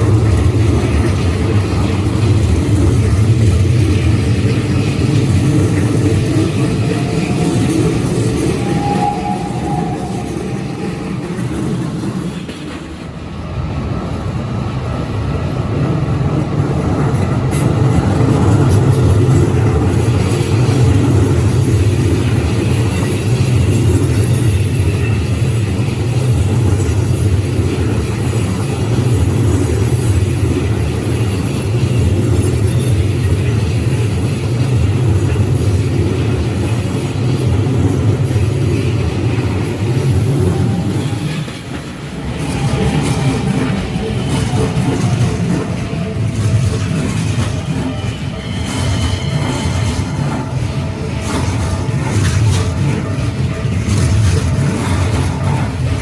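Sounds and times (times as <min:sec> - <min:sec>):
electric train rumbling past: 0:00.0 - 0:56.0.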